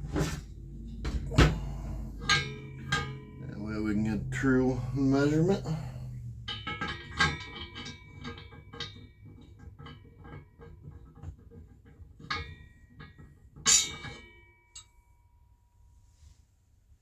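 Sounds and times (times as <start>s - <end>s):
metal hardware clinking and knocking: 0.0s - 4.5s, 6.3s - 14.9s.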